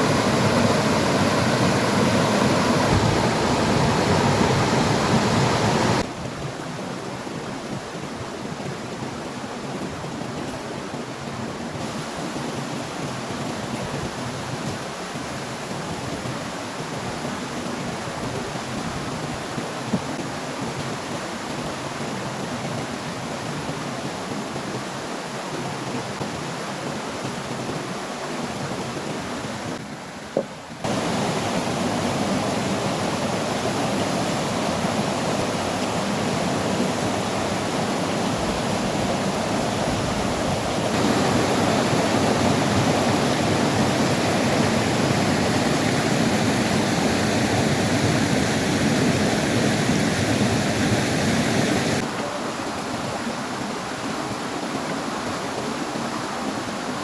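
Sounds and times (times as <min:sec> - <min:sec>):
strong wind blowing: 0:00.0 - 0:10.9, 0:30.7 - 0:55.8.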